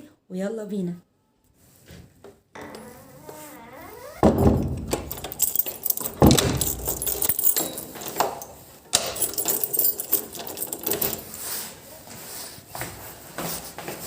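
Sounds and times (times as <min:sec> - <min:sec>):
keys jangling: 0:04.6 - 0:11.4.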